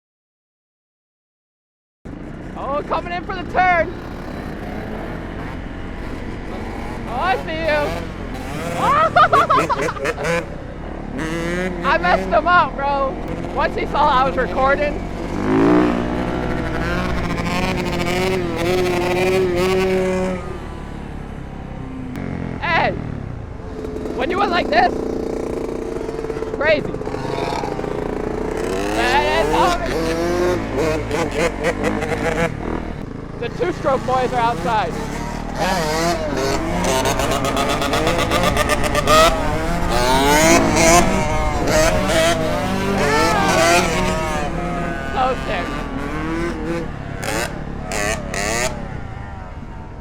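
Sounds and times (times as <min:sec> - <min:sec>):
dirt bike engine revving: 0:02.1 - 0:50.0.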